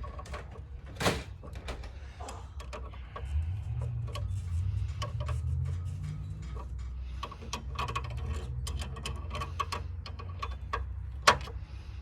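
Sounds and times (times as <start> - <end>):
steady low rumble: 2.7 - 8.5.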